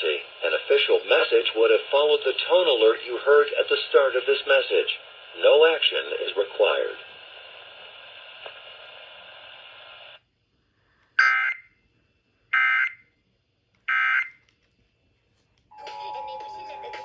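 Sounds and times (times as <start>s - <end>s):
faint broadcast hiss: 0.0s - 11.3s.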